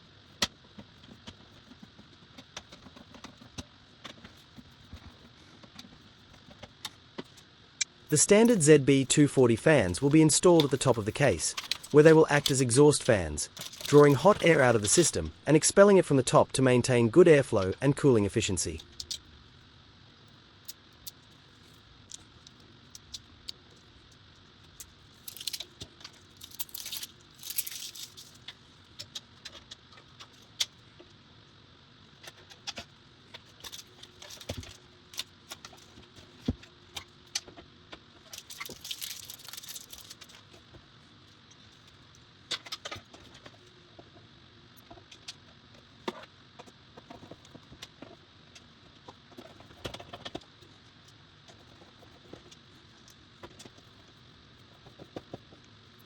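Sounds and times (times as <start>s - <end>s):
small screws rattling: 25.2s - 28.4s, 38.3s - 40.3s.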